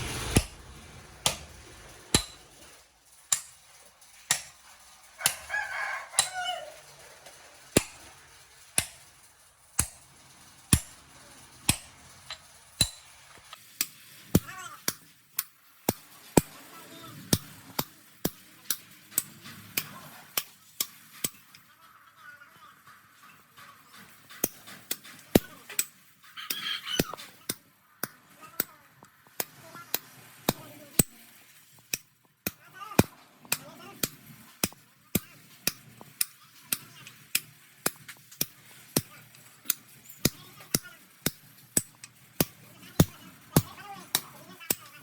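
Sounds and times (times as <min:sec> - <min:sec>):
hammer blows on metal: 0:00.0 - 0:02.6
ringing hammer blows: 0:00.0 - 0:13.5.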